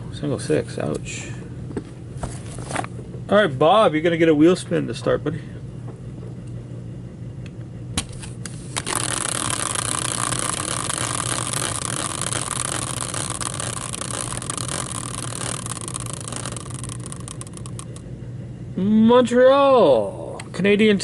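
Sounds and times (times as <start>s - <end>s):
prize wheel ticking: 8.8s - 18.0s.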